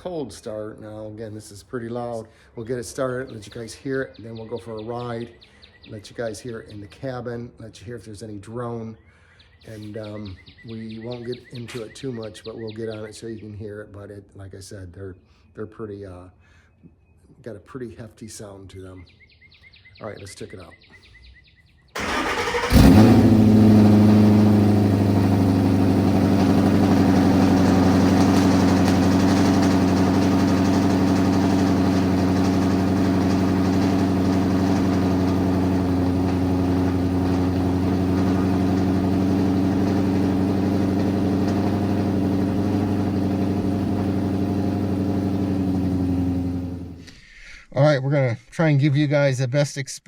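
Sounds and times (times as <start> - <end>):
car engine revving and idling: 22.0 - 47.1
starter cranking: 22.0 - 47.1.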